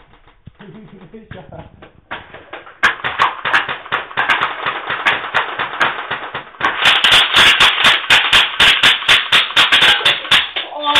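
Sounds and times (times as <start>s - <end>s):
airsoft gun firing: 2.1s - 10.6s.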